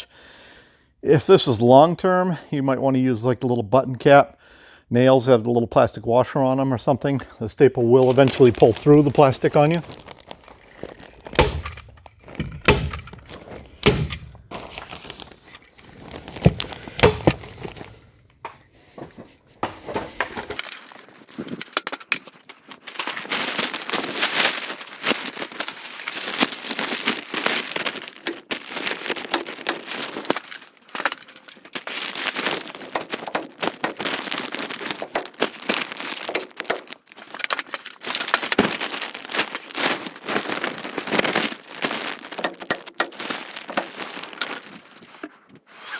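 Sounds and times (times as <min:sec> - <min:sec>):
plastic sheeting crinkling: 0:07.8 - 0:18.0, 0:20.4 - 0:45.9
hand stapler clacks: 0:11.4 - 0:14.3, 0:28.2 - 0:31.6, 0:32.4 - 0:38.3, 0:42.3 - 0:44.0.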